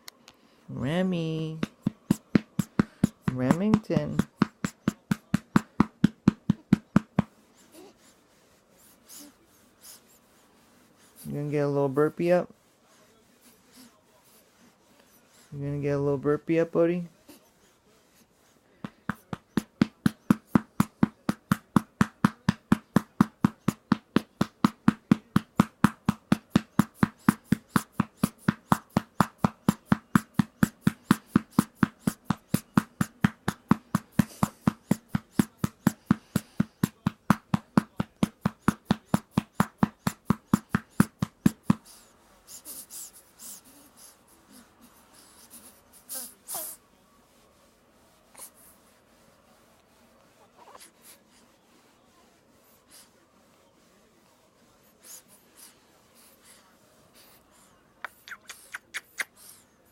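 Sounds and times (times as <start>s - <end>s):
hand patting baby's back: 1.6s - 7.4s.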